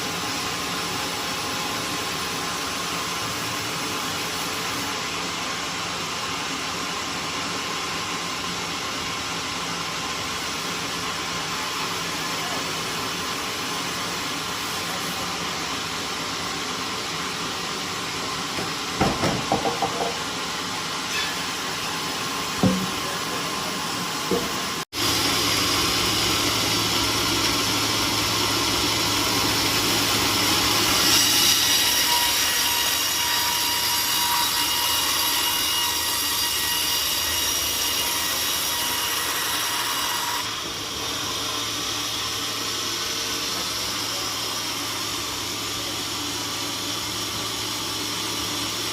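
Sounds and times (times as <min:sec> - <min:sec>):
sawmill machinery running: 0:00.0 - 0:48.9
sharp knocks: 0:18.6 - 0:20.2, 0:22.6 - 0:23.1.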